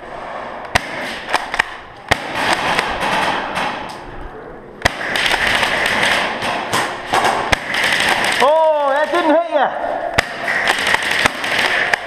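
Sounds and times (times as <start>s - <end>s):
steady background din: 0.0s - 12.0s
airsoft gunshot cracks: 4.8s - 8.4s.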